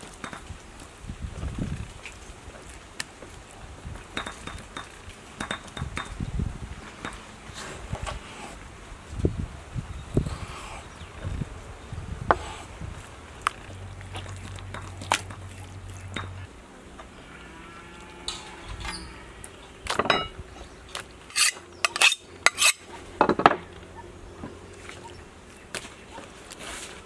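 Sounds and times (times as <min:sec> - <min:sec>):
dishes clinking and knocking: 0:20.0 - 0:20.4.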